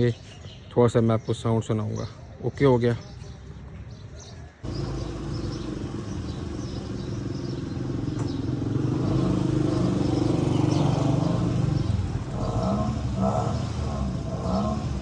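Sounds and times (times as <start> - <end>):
vehicle engine exhaust running: 4.6 - 15.0.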